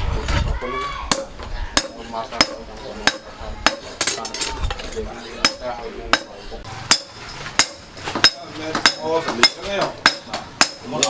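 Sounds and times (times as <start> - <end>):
hammer striking steel on anvil: 1.1 - 11.0.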